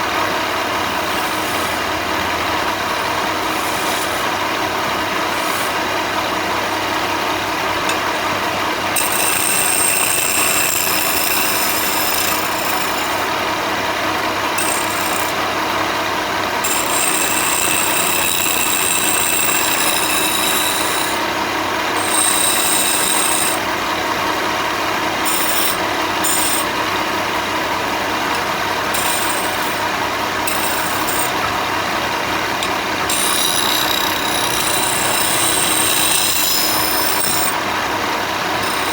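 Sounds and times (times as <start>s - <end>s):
power tool abrasive noise: 0.0s - 6.3s, 9.0s - 13.4s, 14.5s - 15.4s, 16.6s - 21.3s, 22.0s - 23.7s, 25.1s - 27.0s, 28.3s - 38.9s.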